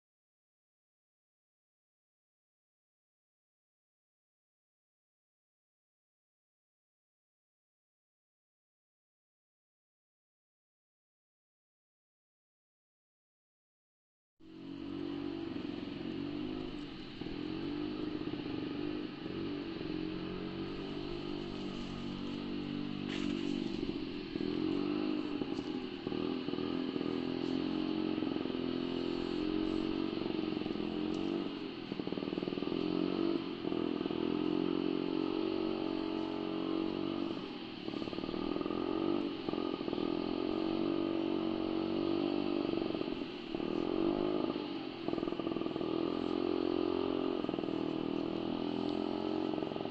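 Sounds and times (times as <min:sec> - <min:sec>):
motorcycle engine revving: 0:14.4 - 0:49.9.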